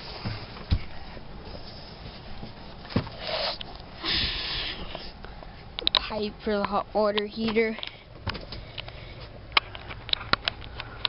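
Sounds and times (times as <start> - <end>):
low background hum: 0.0 - 11.0
short rustling hisses: 3.1 - 5.2.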